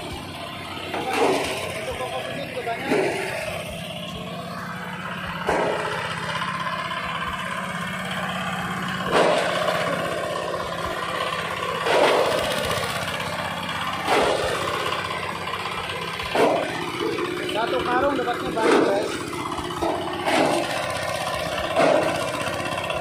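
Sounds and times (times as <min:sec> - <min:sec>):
small engine driving a shredder: 0:00.0 - 0:23.0.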